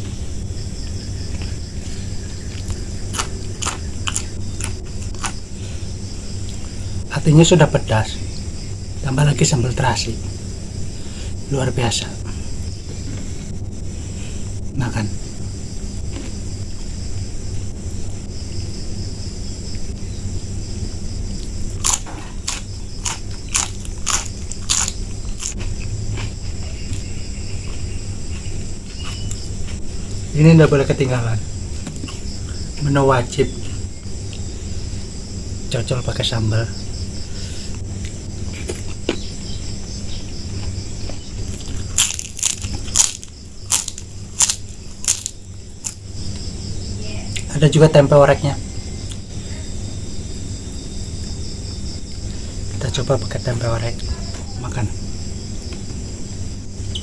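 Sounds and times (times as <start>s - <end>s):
person chewing crunchy food: 1.3s - 6.8s, 21.3s - 29.8s, 37.7s - 46.1s.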